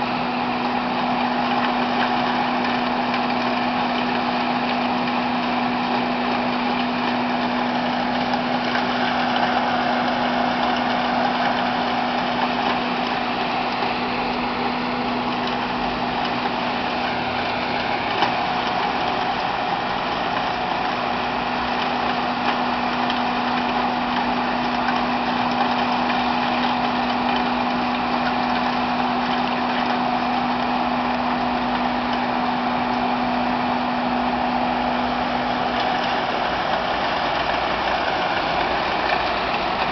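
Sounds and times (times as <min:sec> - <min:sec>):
loader engine running: 0:00.0 - 0:39.9.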